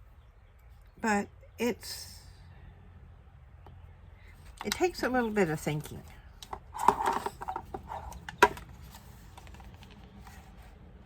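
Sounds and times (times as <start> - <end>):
paper rustling: 6.8 - 10.8.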